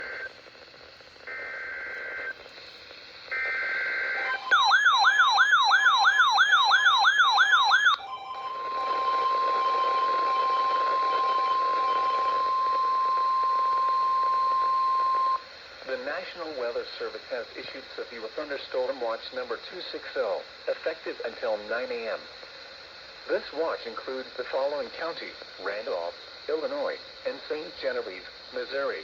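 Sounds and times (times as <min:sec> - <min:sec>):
digital data tone bursts: 0:03.3 - 0:15.4
steady alarm tone: 0:03.3 - 0:15.4.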